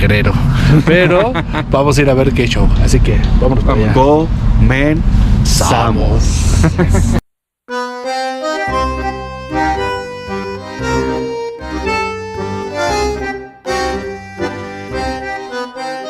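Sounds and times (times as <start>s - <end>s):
instrumental music with bass beat: 6.4s - 16.0s.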